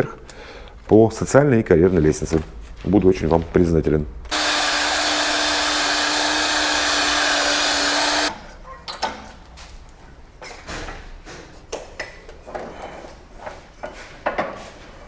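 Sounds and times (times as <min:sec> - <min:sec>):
workshop tool hissing and humming: 0:04.3 - 0:08.3.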